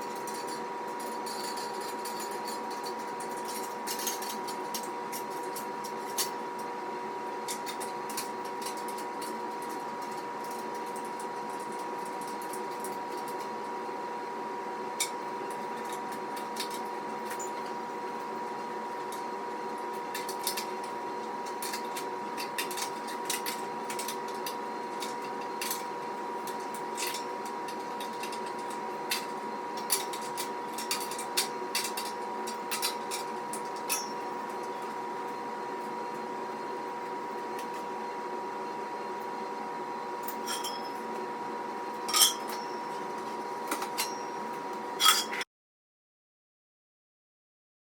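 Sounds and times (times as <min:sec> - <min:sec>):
metal parts clinking: 0:40.3 - 0:41.0, 0:42.1 - 0:42.6, 0:45.0 - 0:45.4.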